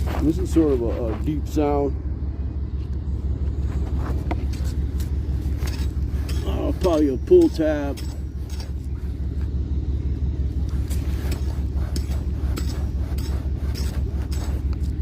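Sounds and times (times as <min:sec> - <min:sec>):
digging tool scraping soil: 0:00.0 - 0:01.6, 0:03.7 - 0:08.9, 0:10.7 - 0:15.0.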